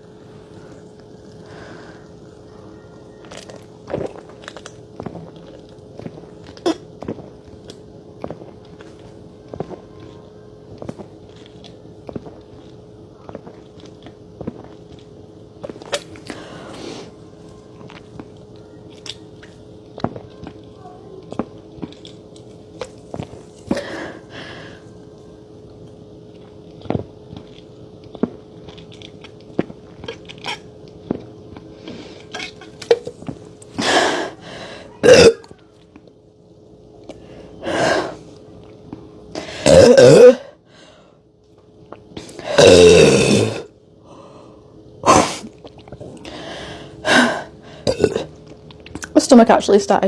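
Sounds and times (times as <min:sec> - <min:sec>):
person gulping soda: 0:00.0 - 0:02.5, 0:26.4 - 0:34.4, 0:35.0 - 0:35.6, 0:38.8 - 0:40.6, 0:41.8 - 0:43.8, 0:45.0 - 0:49.2
person coughing: 0:35.0 - 0:35.4
person burping: 0:35.0 - 0:35.5, 0:39.4 - 0:40.5, 0:42.4 - 0:43.7, 0:45.0 - 0:45.5, 0:47.1 - 0:48.3.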